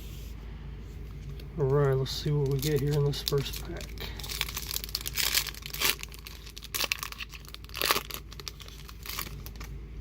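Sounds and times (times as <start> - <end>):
foil wrapper tearing and crinkling: 1.8 - 9.7.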